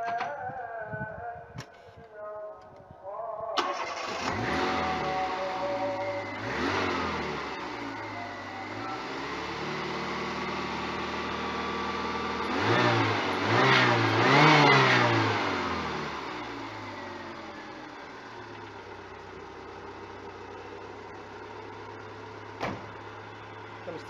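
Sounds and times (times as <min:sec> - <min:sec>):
engine revving: 0:03.6 - 0:18.7
car engine idling: 0:03.6 - 0:24.0.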